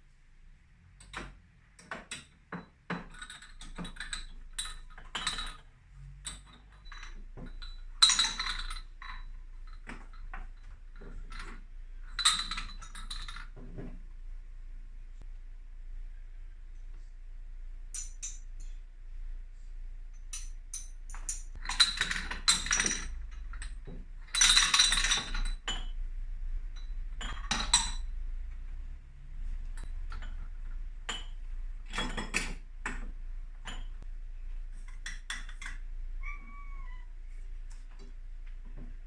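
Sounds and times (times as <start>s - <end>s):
kitchenware clinking and clattering: 1.0s - 14.0s, 20.2s - 26.0s, 26.7s - 28.2s, 29.8s - 34.1s, 34.7s - 35.9s.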